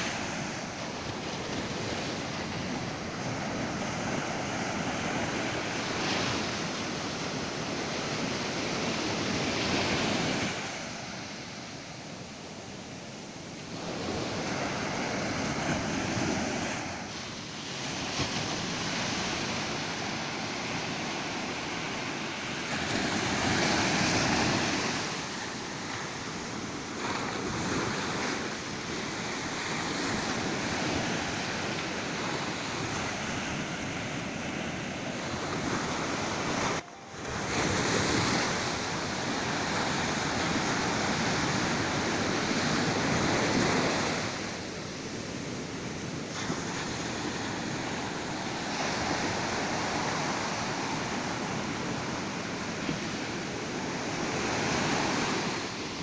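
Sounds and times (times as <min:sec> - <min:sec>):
waves breaking on beach: 0:00.0 - 0:56.0.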